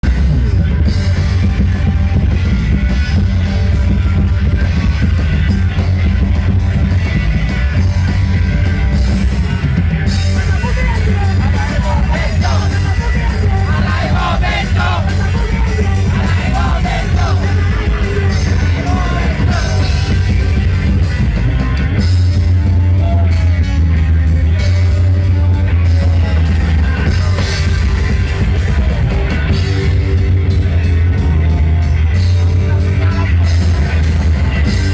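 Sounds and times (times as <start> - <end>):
loud rock band music: 0.0 - 34.9
person shouting singing: 10.5 - 20.3.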